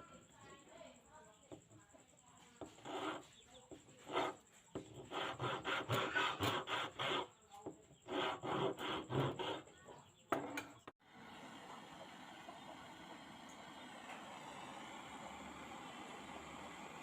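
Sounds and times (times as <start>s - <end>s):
hand filing scraping strokes: 2.6s - 9.8s.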